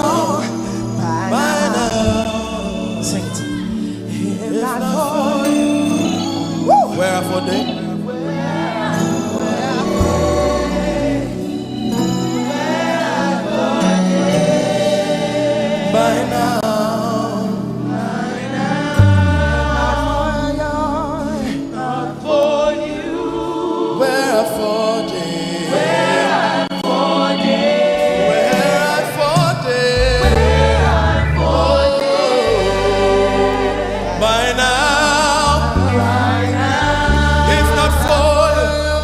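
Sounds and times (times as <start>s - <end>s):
choir singing gospel music: 0.0s - 39.0s
deep bass notes: 1.0s - 3.8s, 9.9s - 11.5s, 18.9s - 21.6s, 29.3s - 39.0s.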